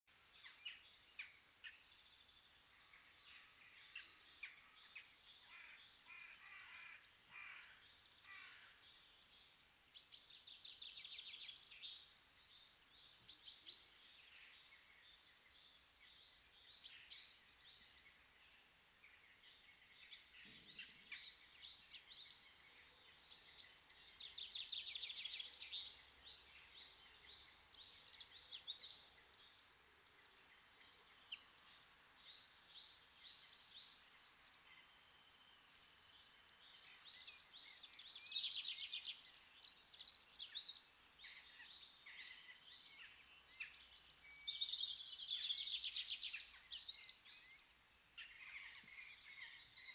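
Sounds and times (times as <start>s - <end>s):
songbirds singing: 0.1s - 49.9s.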